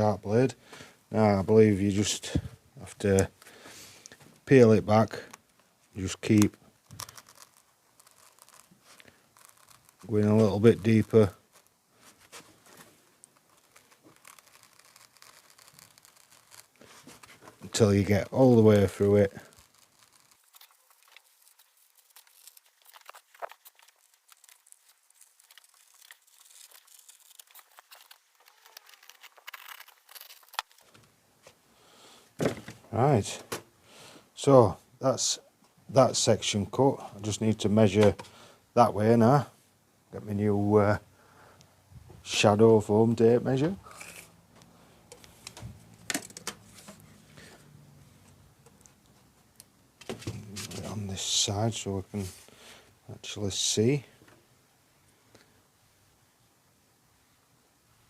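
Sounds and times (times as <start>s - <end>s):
foam crinkling and tearing: 6.0s - 31.1s
blade cutting foam: 13.6s - 22.6s.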